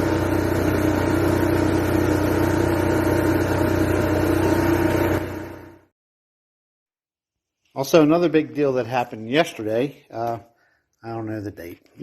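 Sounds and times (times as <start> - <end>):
generator engine running: 0.0 - 5.9.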